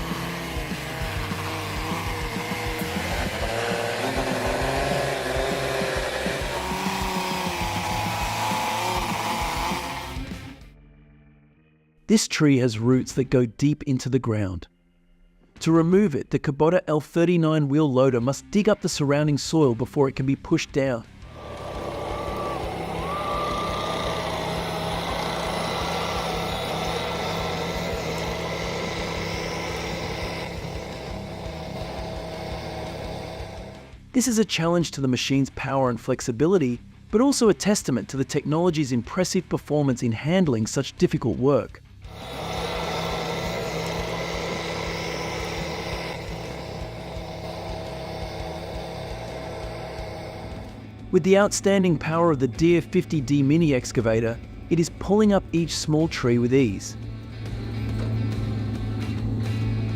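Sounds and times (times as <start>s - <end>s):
vehicle engine running under load: 0.0s - 10.4s, 21.2s - 34.1s, 42.0s - 53.7s, 57.0s - 59.9s
high whine: 42.1s - 51.6s.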